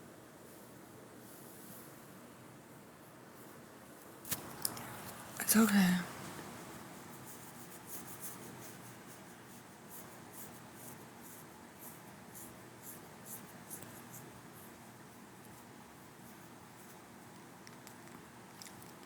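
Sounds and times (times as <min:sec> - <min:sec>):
low room noise: 0:00.0 - 0:19.0
faint scratching: 0:06.6 - 0:17.0.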